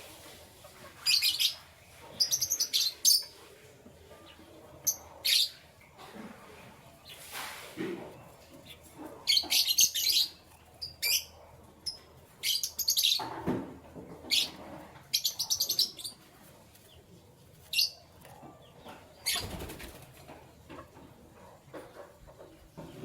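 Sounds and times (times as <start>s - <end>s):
canary chirps: 1.0s - 3.4s, 8.6s - 13.4s, 14.2s - 17.0s
canaries fluttering wings: 19.2s - 20.3s.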